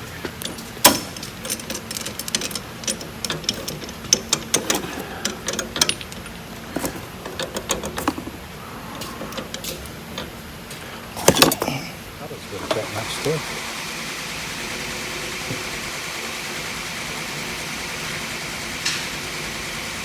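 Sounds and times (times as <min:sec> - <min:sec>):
steel parts clinking: 0:00.0 - 0:12.0
faint steady hum: 0:00.0 - 0:20.0.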